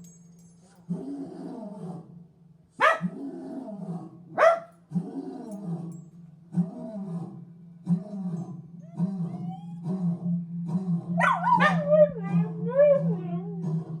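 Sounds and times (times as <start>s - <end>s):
dog howling: 7.9s - 14.0s.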